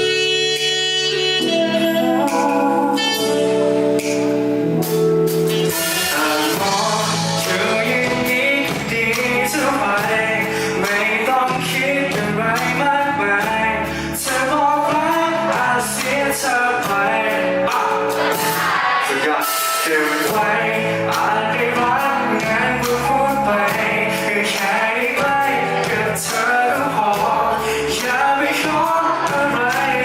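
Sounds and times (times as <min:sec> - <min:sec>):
live band playing pop: 0:00.0 - 0:30.0.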